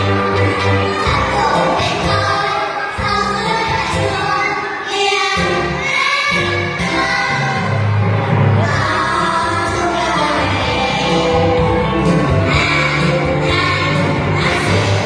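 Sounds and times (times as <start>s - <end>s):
instrumental accompaniment with bass: 0.0s - 4.4s, 5.4s - 15.0s
women and children singing: 0.0s - 8.0s, 8.6s - 15.0s.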